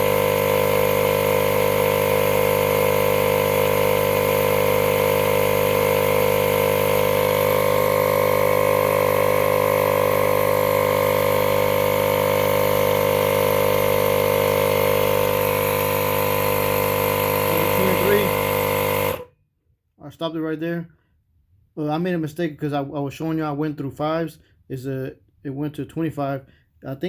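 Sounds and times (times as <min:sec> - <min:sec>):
air compressor droning: 0:00.0 - 0:19.3.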